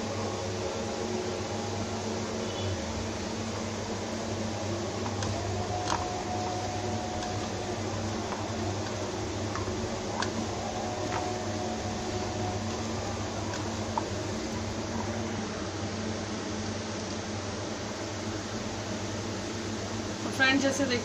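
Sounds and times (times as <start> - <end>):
fan hum: 0.0 - 21.0
food squishing in a bowl: 4.0 - 15.2.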